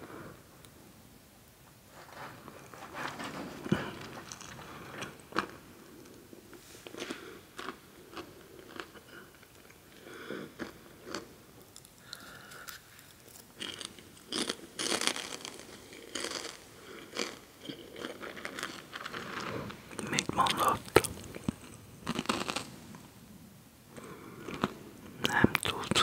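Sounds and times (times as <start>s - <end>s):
chewing crunchy snacks: 6.8s - 23.0s, 24.0s - 26.0s.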